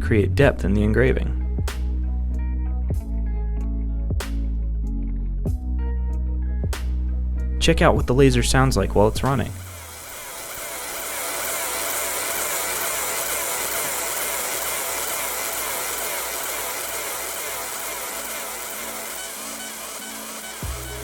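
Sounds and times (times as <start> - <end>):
laser engraver high-pitched hiss: 9.6 - 21.0.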